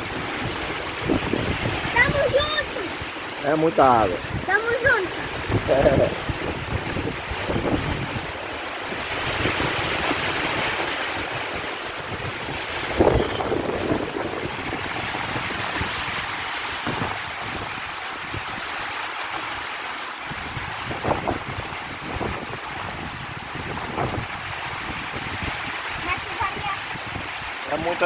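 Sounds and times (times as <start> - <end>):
heavy rain pouring: 0.0 - 28.0.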